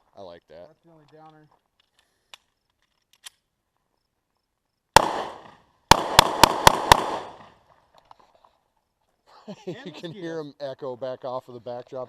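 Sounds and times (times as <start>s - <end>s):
handgun gunshots echoing: 5.0s - 7.5s.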